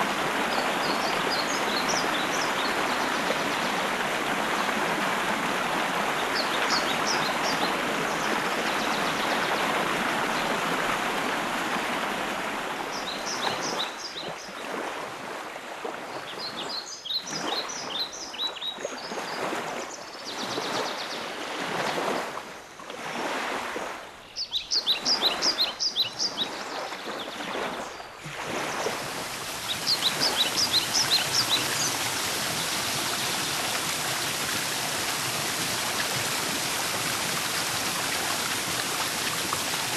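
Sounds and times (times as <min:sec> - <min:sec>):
stream water rushing: 0:00.0 - 0:15.8, 0:24.8 - 0:39.9
songbird chirping: 0:24.2 - 0:28.2, 0:29.6 - 0:33.9.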